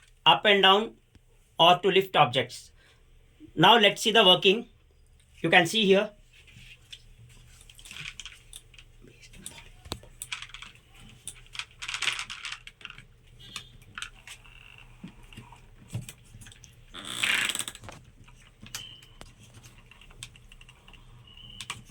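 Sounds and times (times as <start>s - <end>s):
small plastic clicks and creaks: 7.6s - 21.9s
syringe plungers rubbing: 16.9s - 17.9s.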